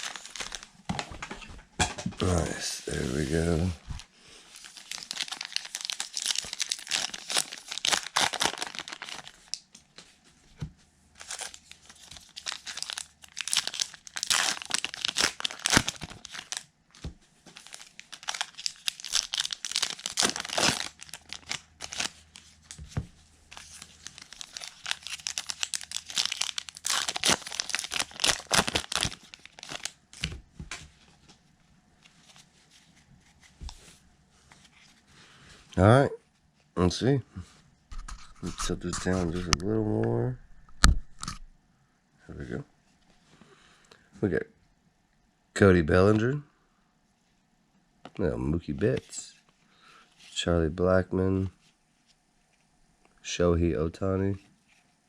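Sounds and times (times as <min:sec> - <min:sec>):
card pack wrappers tearing and crinkling: 0:00.0 - 0:00.7, 0:04.5 - 0:09.7, 0:11.2 - 0:22.9, 0:23.5 - 0:30.4.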